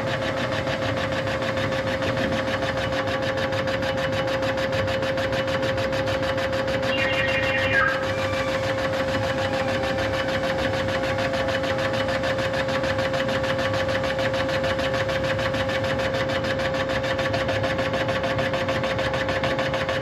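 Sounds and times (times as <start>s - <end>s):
boring machine whine: 5.6s - 14.0s.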